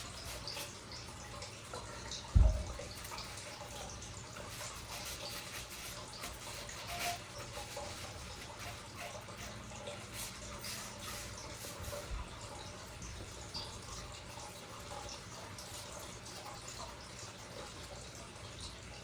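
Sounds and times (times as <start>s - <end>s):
cloth rubbing metal: 0.0s - 1.0s, 2.4s - 16.4s.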